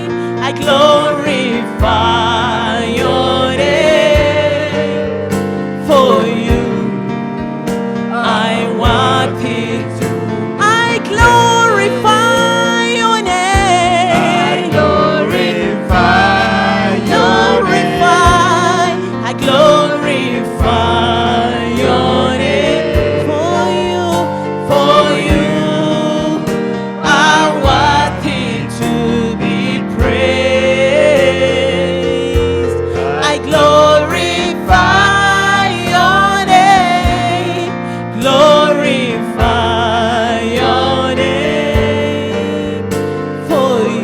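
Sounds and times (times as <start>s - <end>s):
voices singing: 0.0s - 7.4s, 8.0s - 44.0s
bass: 0.0s - 44.0s
keyboard: 0.0s - 44.0s
slow beat: 4.0s - 7.1s, 8.8s - 29.3s, 30.0s - 37.6s.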